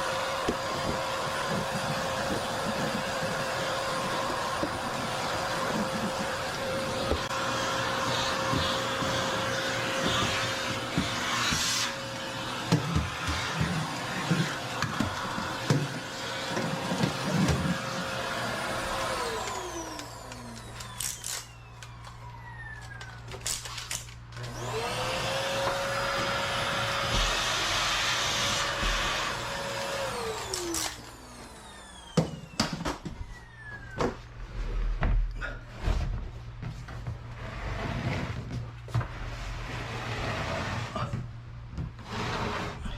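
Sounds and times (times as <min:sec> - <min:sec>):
power tool motor whining: 0:00.0 - 0:32.6.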